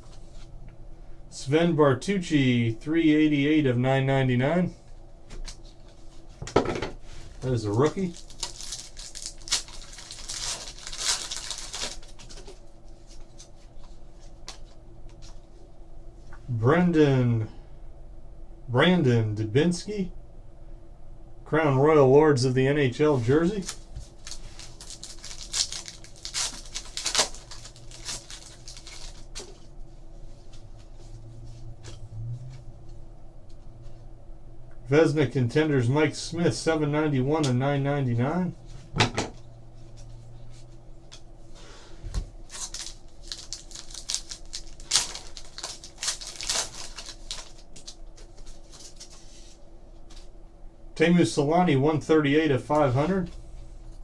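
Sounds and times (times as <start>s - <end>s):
faint steady hum: 0.0s - 54.0s
cards and wrappers crinkling: 7.4s - 13.5s, 23.1s - 29.6s, 42.5s - 49.6s.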